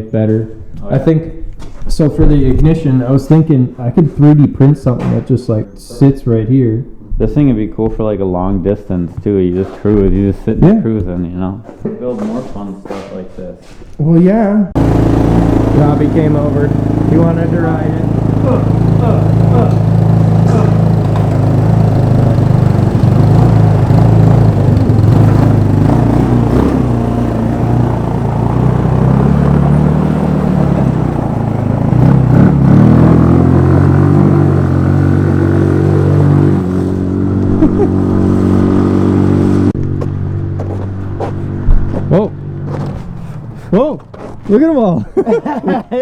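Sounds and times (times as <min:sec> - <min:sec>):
scooter engine revving: 0:14.8 - 0:45.9.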